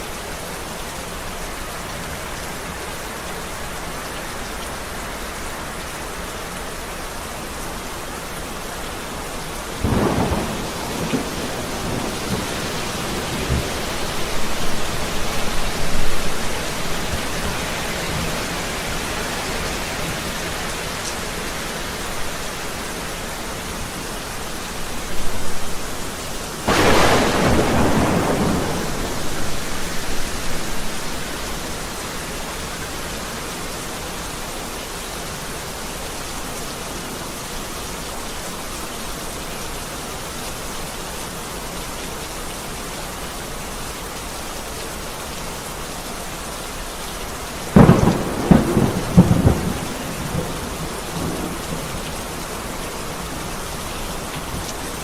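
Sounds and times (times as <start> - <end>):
heavy rain falling: 0.0 - 55.0
sharp close thunderclap: 9.8 - 15.0, 26.7 - 31.0, 47.8 - 51.9
thunder rumbling: 9.8 - 17.7, 26.6 - 31.6, 47.8 - 52.4.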